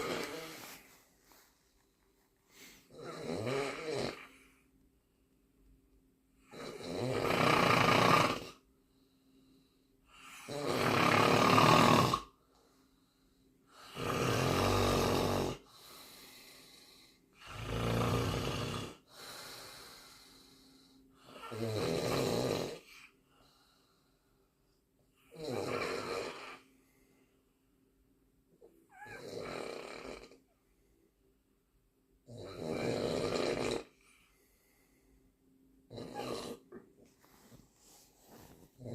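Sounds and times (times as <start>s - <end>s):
loud snoring: 0.0s - 0.8s, 2.6s - 4.5s, 6.4s - 8.6s, 10.2s - 12.4s, 13.7s - 19.3s, 21.2s - 23.1s, 25.3s - 26.7s, 28.9s - 30.4s, 32.2s - 34.0s, 35.9s - 36.8s
quiet breaths: 0.0s - 3.2s, 8.5s - 10.5s, 12.2s - 15.0s, 15.6s - 21.6s, 22.7s - 25.4s, 26.5s - 29.2s, 30.2s - 32.1s, 33.8s - 38.9s.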